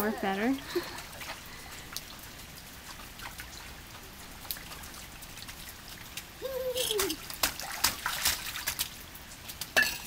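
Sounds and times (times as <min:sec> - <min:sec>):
rain pattering: 0:00.0 - 0:10.0
water splashes: 0:00.0 - 0:10.0
child vocalizing: 0:06.4 - 0:07.2.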